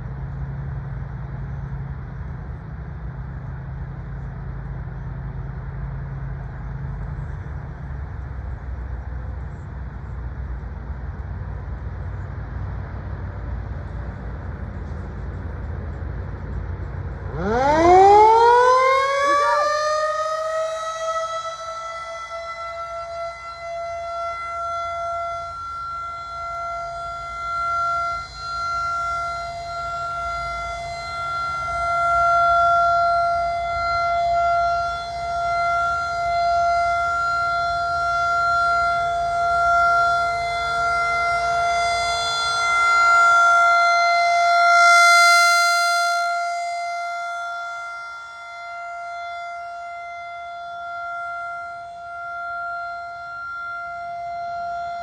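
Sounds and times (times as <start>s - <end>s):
warning siren steady tone: 0.0s - 55.0s.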